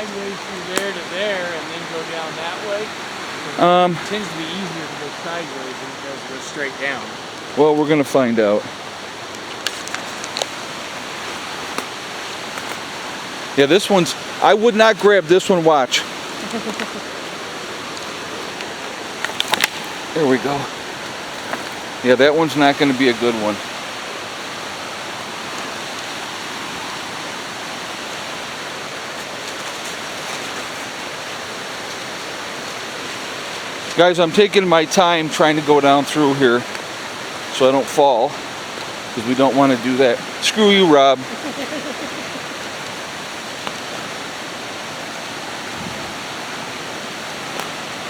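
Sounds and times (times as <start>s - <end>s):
creek and waterfall rushing: 0.0s - 48.0s.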